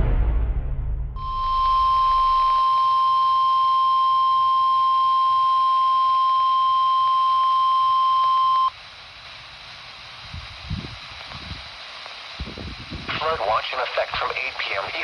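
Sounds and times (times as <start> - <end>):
high-pitched alarm beep: 1.2 - 8.7
faint radio hiss: 1.8 - 15.0.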